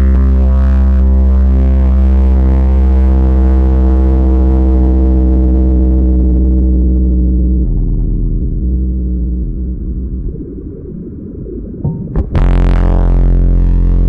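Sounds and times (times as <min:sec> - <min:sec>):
deep bass drone: 0:00.0 - 0:14.0.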